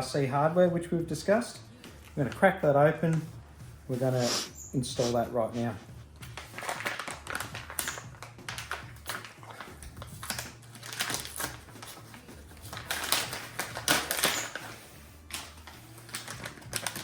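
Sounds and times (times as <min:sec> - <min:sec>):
packaging clicks and rustles: 0:06.3 - 0:17.0.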